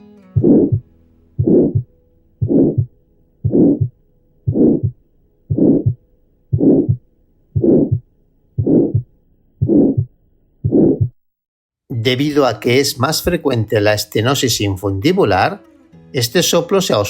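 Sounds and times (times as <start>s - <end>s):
heartbeat: 0.4s - 0.8s, 1.4s - 11.2s
systolic heart murmur: 0.4s - 0.8s, 1.4s - 11.2s.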